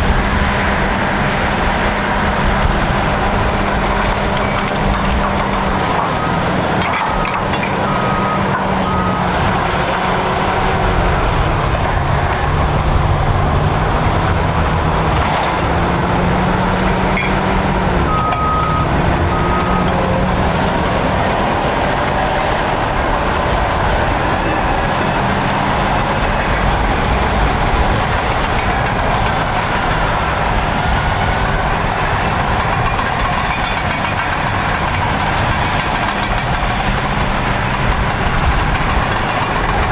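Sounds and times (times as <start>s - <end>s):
bulldozer diesel engines: 0.0s - 39.9s
reversing alarm beeps: 5.3s - 10.0s, 18.1s - 21.1s.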